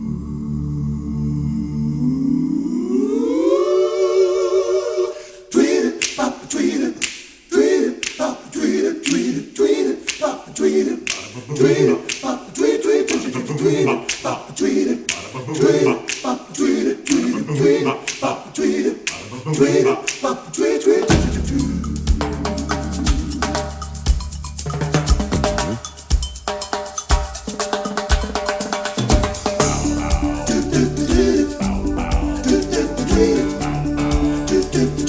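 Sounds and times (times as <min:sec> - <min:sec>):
a cappella singing: 0:00.0 - 0:23.7, 0:29.6 - 0:35.0
beat of sharp clicks: 0:06.0 - 0:06.3, 0:07.0 - 0:07.3, 0:08.0 - 0:08.3, 0:09.0 - 0:09.4, 0:10.0 - 0:10.3, 0:11.0 - 0:12.4, 0:13.0 - 0:13.3, 0:15.0 - 0:15.2, 0:16.0 - 0:17.4, 0:18.0 - 0:18.3.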